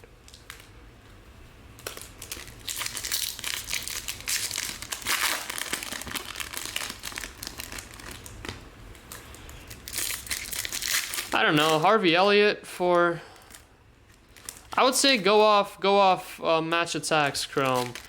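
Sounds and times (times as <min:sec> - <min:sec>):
card pack wrappers crinkling: 0:00.2 - 0:00.7, 0:01.8 - 0:12.0, 0:13.4 - 0:15.6, 0:17.1 - 0:18.0.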